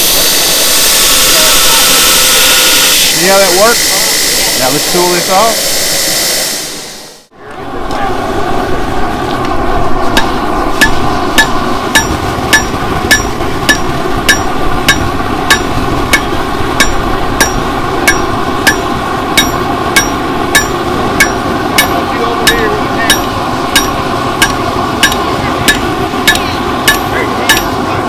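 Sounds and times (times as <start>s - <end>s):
hammer striking steel on anvil: 10.2s - 27.9s.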